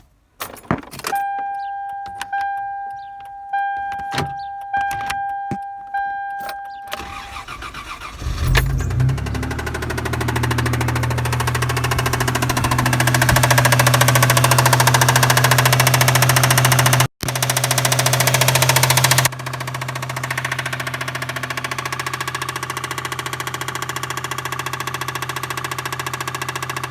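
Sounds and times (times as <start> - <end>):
engine starting: 6.9 - 10.6
engine running with rapid tapping: 7.0 - 26.9.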